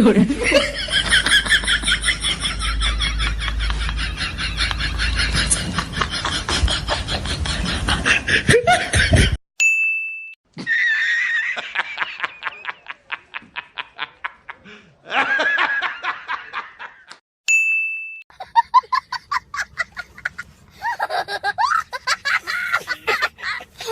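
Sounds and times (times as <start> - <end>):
high-pitched cackling laughs: 0.0 - 9.4, 10.6 - 14.6, 18.4 - 23.9.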